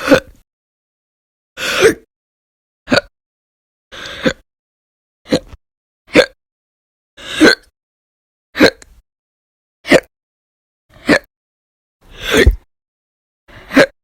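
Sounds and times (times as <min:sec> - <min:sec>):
woman hiccuping loudly: 0:08.6 - 0:08.8.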